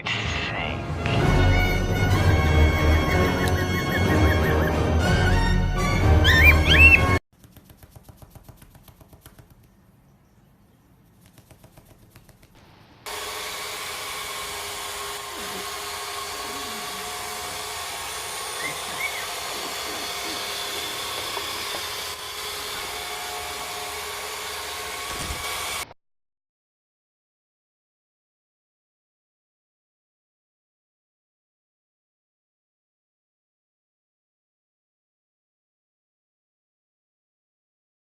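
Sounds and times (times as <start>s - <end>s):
fan motor whirring: 13.1s - 25.8s.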